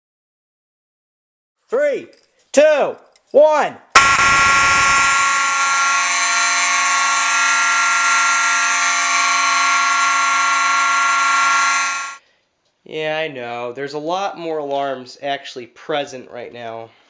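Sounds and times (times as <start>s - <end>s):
fire alarm horns blaring: 4.0s - 12.2s.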